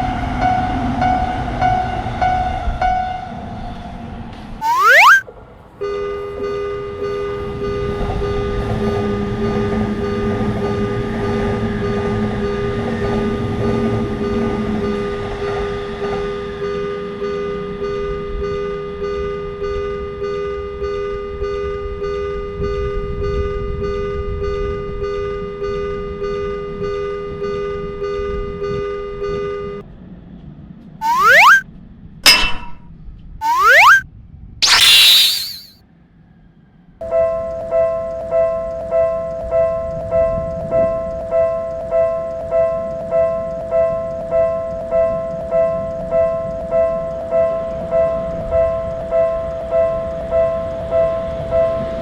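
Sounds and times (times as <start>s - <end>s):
cartoon boing sound effect: 4.6s - 5.2s, 31.0s - 31.6s, 33.4s - 34.0s, 34.6s - 35.7s.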